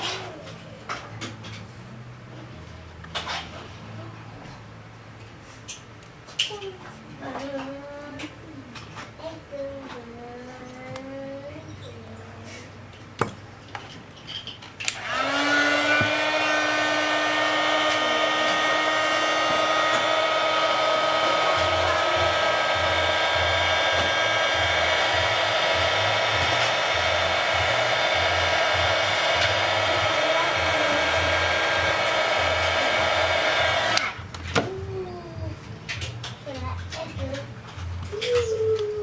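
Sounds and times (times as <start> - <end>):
hot-air blower whining: 14.8 - 34.6.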